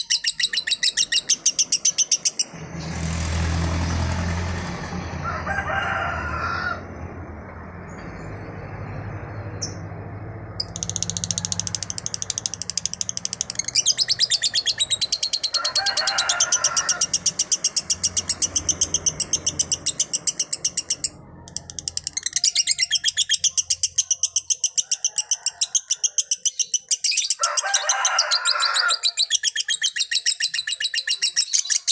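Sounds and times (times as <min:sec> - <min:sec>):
bird chattering fast high chirps: 0:00.0 - 0:02.6, 0:10.6 - 0:31.9.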